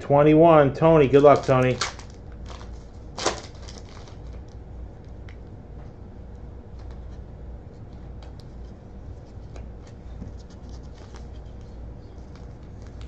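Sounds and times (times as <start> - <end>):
card pack opening and flipping: 1.2 - 4.4.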